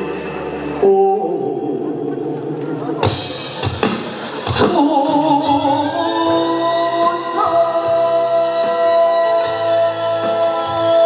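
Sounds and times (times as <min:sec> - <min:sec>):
man singing with vibrato: 0:00.0 - 0:11.0.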